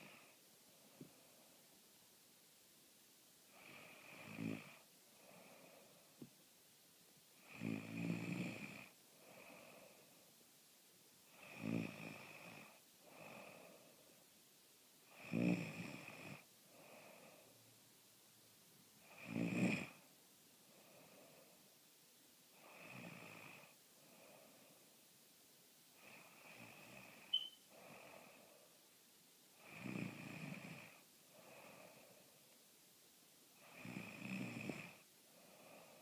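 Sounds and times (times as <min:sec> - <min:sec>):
loud snoring: 0:03.6 - 0:04.8, 0:07.4 - 0:08.9, 0:11.3 - 0:13.3, 0:15.1 - 0:16.4, 0:19.0 - 0:20.0, 0:22.6 - 0:23.7, 0:29.6 - 0:31.0, 0:33.6 - 0:35.0
soft breath out: 0:05.1 - 0:06.3, 0:09.1 - 0:10.4, 0:35.3 - 0:36.0.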